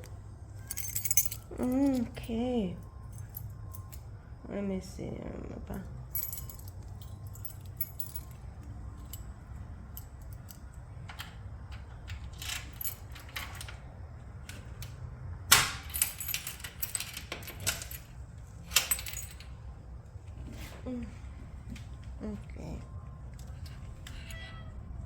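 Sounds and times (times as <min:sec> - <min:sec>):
metallic jingling and clinking: 0:00.6 - 0:04.0, 0:06.0 - 0:10.8, 0:12.1 - 0:13.8, 0:15.8 - 0:19.6.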